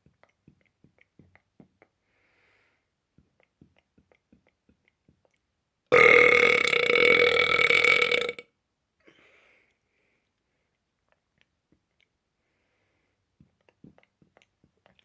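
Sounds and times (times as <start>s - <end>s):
person burping: 5.9s - 8.4s.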